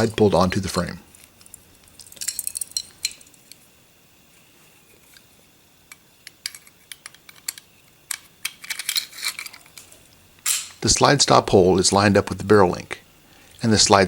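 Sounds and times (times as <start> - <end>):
small steel parts clicking: 0.0 - 3.7, 5.9 - 10.8.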